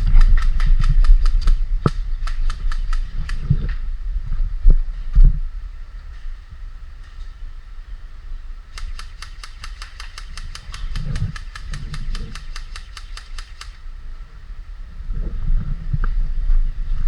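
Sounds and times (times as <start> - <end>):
sharp mechanical clicks: 0.0 - 3.6, 8.7 - 13.9
low rumble: 0.0 - 8.7
wind noise on microphone: 0.0 - 17.0.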